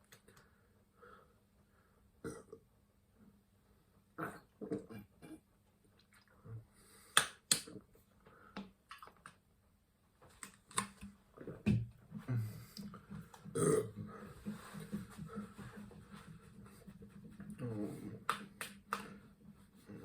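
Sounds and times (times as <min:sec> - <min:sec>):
man burping: 0:02.2 - 0:02.6, 0:04.2 - 0:05.4, 0:13.5 - 0:14.1.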